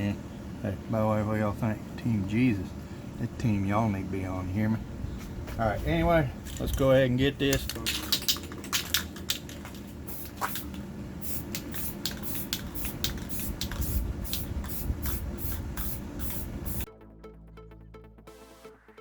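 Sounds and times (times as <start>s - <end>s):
spray paint can hissing: 10.0s - 16.9s.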